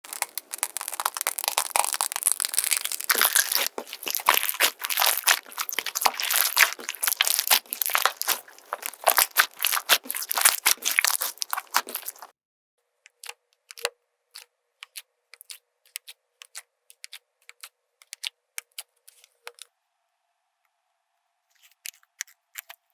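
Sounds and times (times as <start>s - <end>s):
slime crackling and popping: 0.0s - 12.3s.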